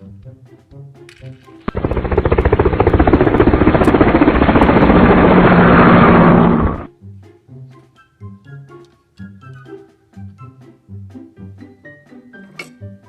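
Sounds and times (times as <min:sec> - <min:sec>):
pulsing motor sound effect: 0:01.7 - 0:06.9.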